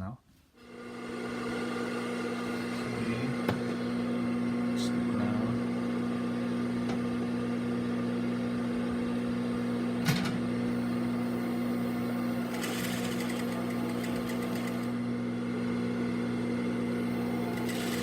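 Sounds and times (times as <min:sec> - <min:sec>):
sewing machine motor humming: 0:11.2 - 0:15.0, 0:17.0 - 0:18.0
sewing machine needle stitching: 0:12.5 - 0:14.9, 0:17.5 - 0:18.0.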